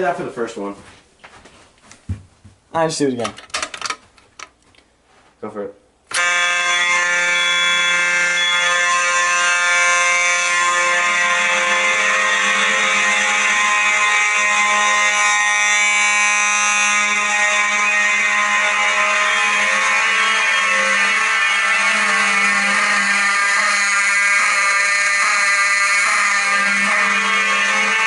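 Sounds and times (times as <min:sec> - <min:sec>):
fire alarm horns sounding: 0:06.1 - 0:28.0.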